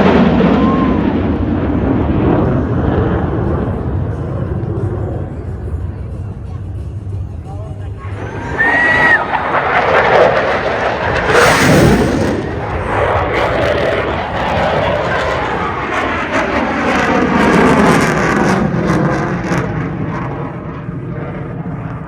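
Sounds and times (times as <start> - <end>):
fighter jet roar flying past: 0.0 - 3.6, 8.0 - 22.0.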